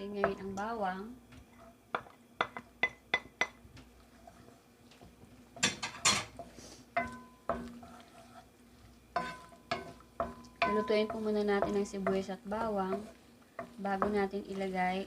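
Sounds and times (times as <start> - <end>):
utensil scraping pan: 4.0 - 4.6, 5.6 - 14.8
metal utensil clinking on cookware: 5.6 - 6.4.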